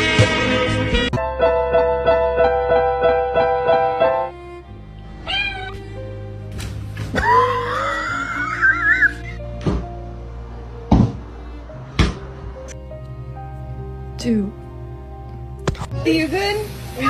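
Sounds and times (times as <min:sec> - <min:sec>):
animal cry: 0:05.2 - 0:05.9, 0:07.2 - 0:09.4
long high wavering animal cry: 0:05.2 - 0:06.0, 0:07.2 - 0:09.4.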